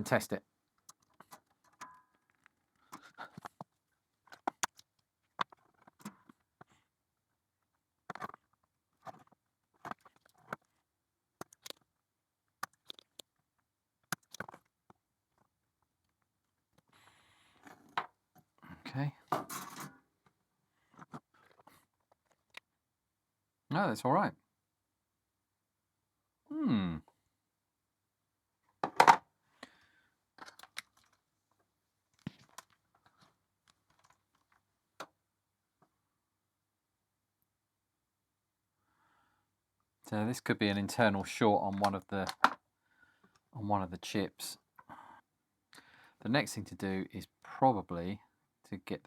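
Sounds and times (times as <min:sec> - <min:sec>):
hard objects clicking and knocking: 0:28.8 - 0:29.3.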